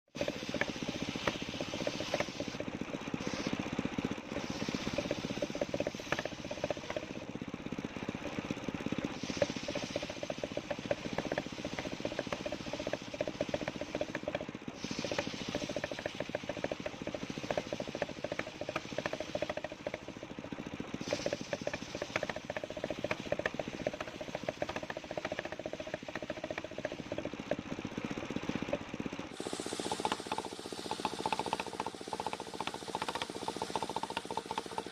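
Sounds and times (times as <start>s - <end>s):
circular sawmill running: 0.1s - 34.9s.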